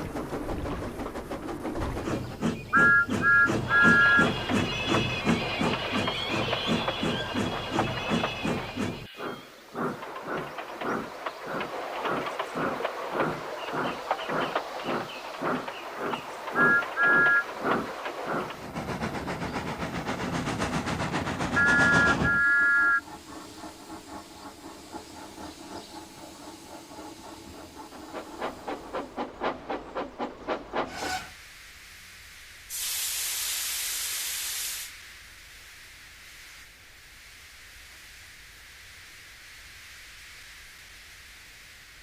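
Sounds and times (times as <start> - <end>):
steam locomotive chuffing: 0.0 - 31.4
steam whistle: 2.7 - 4.4, 21.6 - 23.0
hiss of escaping steam: 23.0 - 31.6, 32.7 - 36.7.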